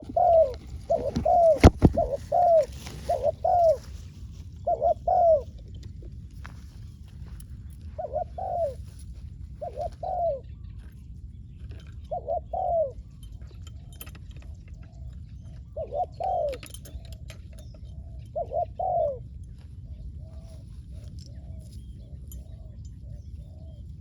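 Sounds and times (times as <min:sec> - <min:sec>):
dove cooing: 0:00.0 - 0:10.8, 0:11.7 - 0:24.0
low steady rumble: 0:16.6 - 0:24.0.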